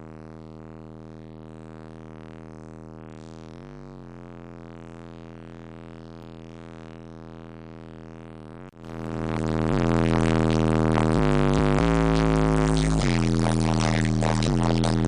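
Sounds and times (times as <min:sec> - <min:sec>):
synthesizer music on car stereo: 0:10.9 - 0:15.0.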